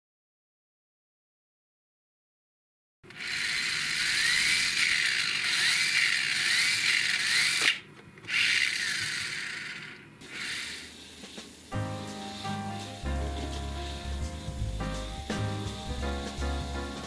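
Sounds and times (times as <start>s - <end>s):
small electric motor whining: 3.1s - 11.7s.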